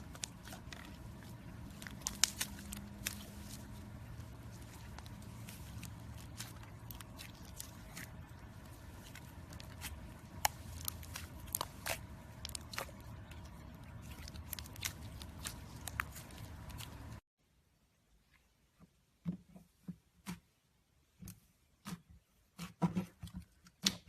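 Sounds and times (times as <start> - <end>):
low steady hum: 0.0 - 17.2
slime squeezed by hand: 0.0 - 17.2.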